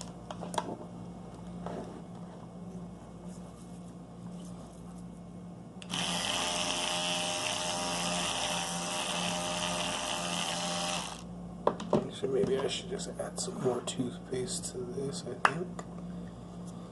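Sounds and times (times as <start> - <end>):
electric toothbrush switch: 5.8 - 11.2
electric toothbrush buzzing: 5.8 - 11.3.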